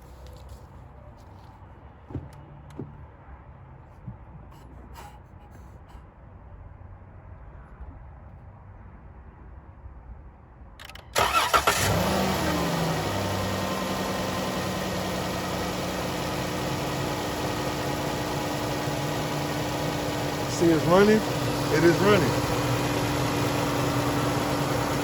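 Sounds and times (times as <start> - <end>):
car engine cranking and idling: 10.8 - 25.0.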